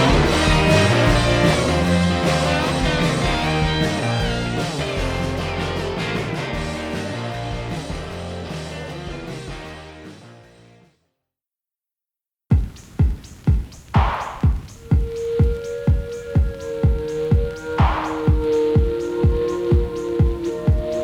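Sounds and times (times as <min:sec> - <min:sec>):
rock music with guitar: 0:00.0 - 0:10.8.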